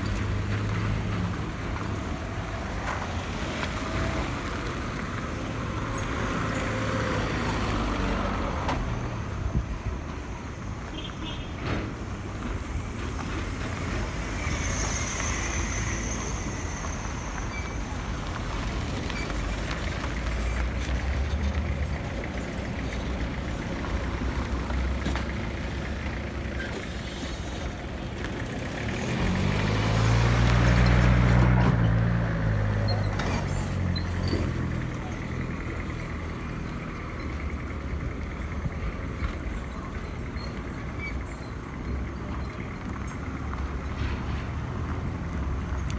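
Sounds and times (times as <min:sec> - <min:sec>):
road traffic rumble: 0:00.0 - 0:45.9
vehicle engine passing close: 0:18.0 - 0:45.9.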